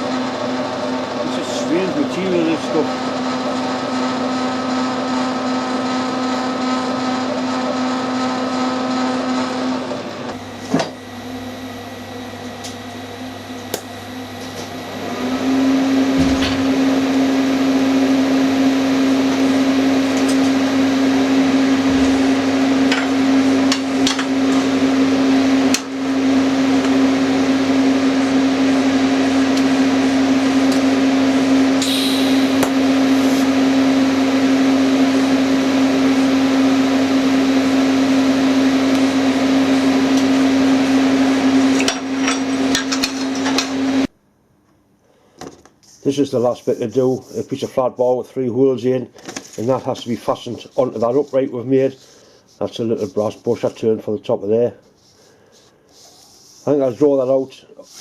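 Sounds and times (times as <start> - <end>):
electric machine tool humming: 1.6 - 44.1.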